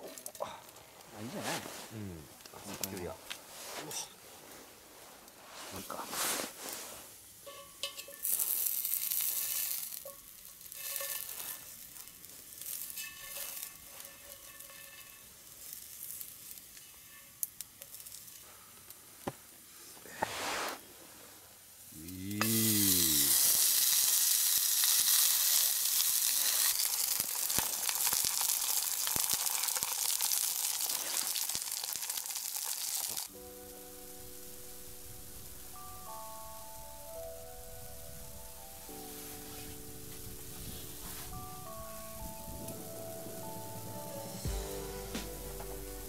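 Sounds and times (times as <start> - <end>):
loud steady sizzle: 5.0 - 46.0
stirring and scraping in a pan: 6.2 - 18.6.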